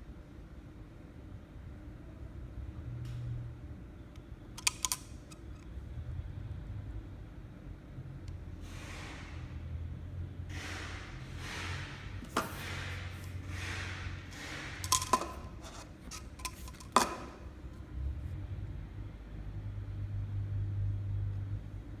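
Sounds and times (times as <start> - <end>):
hard parts clicking and clinking: 4.6 - 5.6, 12.2 - 17.8.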